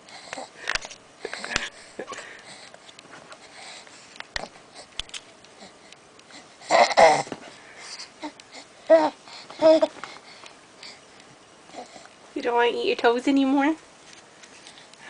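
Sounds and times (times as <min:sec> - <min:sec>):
baby wheezy vocal sounds: 0:06.4 - 0:10.0.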